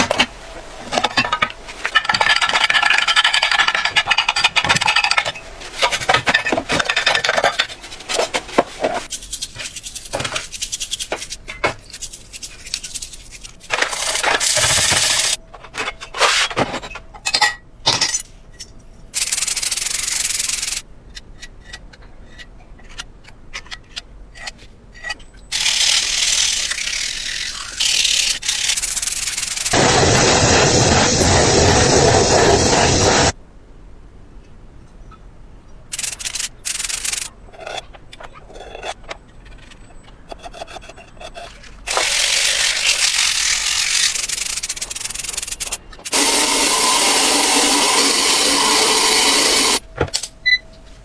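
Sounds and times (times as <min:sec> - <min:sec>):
hand scrubbing tool parts: 0:01.0 - 0:16.5, 0:25.5 - 0:33.4, 0:41.2 - 0:49.8
scattered clicks and knocks: 0:01.3 - 0:15.8
steady loud noise: 0:29.7 - 0:33.4, 0:46.1 - 0:49.8.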